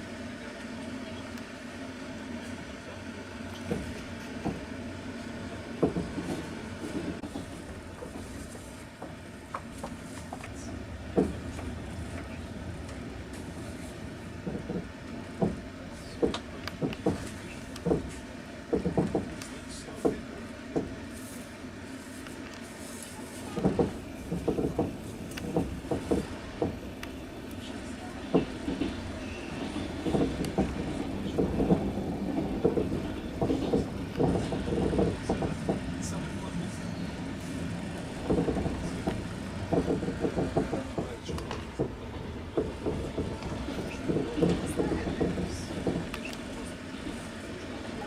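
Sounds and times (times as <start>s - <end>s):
train carriage low rumble: 0.0s - 48.0s
wheels clacking over rail joints: 5.7s - 21.0s, 23.4s - 48.0s.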